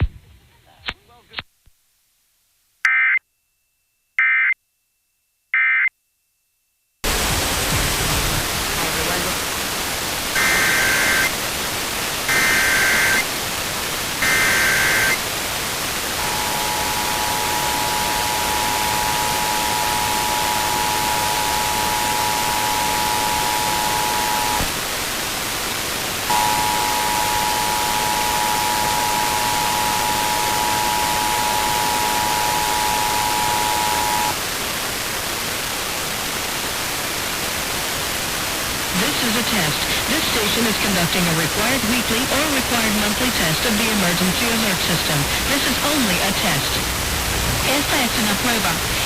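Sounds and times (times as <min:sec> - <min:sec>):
static hiss: 0:07.0 - 0:49.0
digital data tone bursts: 0:10.4 - 0:11.3, 0:12.3 - 0:13.3, 0:14.2 - 0:15.2, 0:16.2 - 0:24.6, 0:26.3 - 0:34.4
two-tone attention signal: 0:16.2 - 0:24.7, 0:26.3 - 0:34.4.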